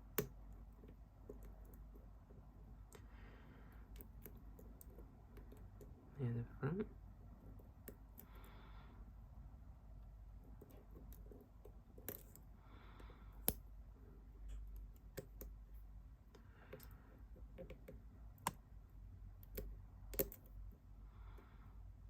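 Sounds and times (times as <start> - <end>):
lock pick clicking in lock: 19.4 - 20.5.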